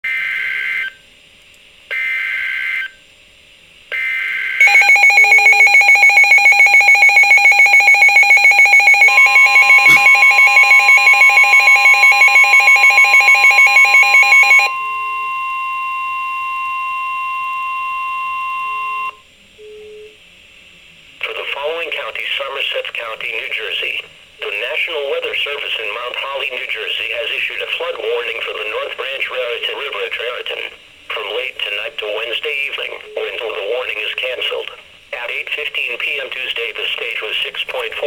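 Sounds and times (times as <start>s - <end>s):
rapidly pulsing alarm tone: 3.9s - 19.2s
buzzing data bursts: 7.6s - 14.7s
steady alert tone: 7.9s - 11.5s.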